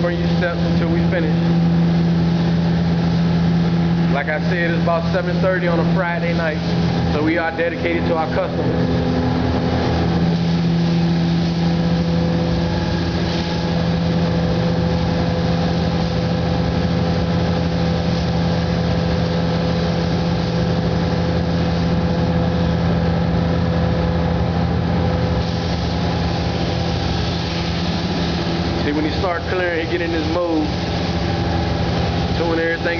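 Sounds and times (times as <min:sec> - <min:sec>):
paint booth machinery hum: 0:00.0 - 0:32.9
paint spray hiss: 0:09.8 - 0:18.6, 0:25.4 - 0:28.8.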